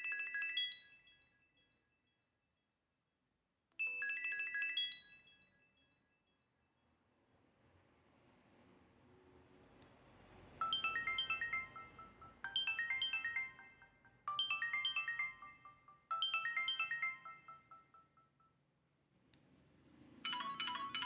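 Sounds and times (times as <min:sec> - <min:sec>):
mobile phone ringtone melody: 0:00.0 - 0:01.3, 0:03.8 - 0:05.5, 0:10.6 - 0:18.6, 0:20.2 - 0:21.0.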